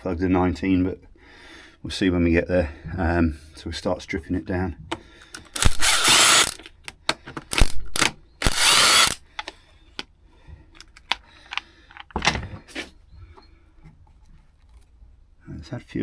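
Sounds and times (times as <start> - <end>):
power tool bursts: 5.6 - 6.6, 7.5 - 9.2.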